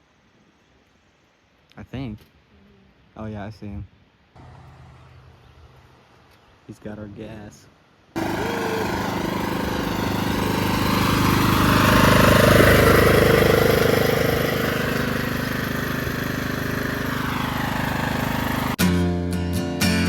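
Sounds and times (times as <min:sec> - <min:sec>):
riding lawn mower engine running: 0:04.4 - 0:05.1, 0:08.2 - 0:19.1.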